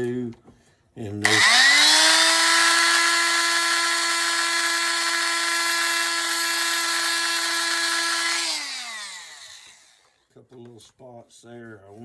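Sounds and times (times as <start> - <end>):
handheld power tool whining: 1.2 - 10.2.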